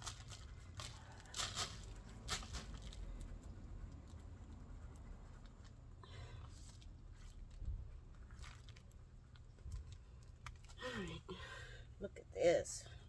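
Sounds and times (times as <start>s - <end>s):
hands digging through soil: 0.0s - 4.3s, 6.4s - 11.2s
soil crunching: 6.5s - 11.2s.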